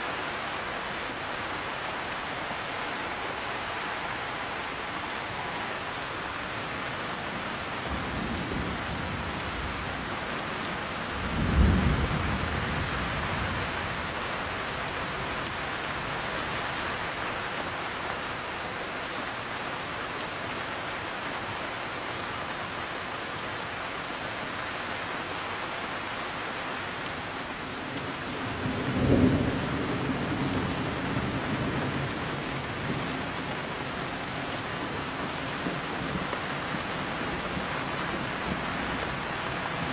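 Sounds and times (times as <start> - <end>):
heavy rain: 0.0 - 39.9
thunder rumbling: 11.1 - 14.1.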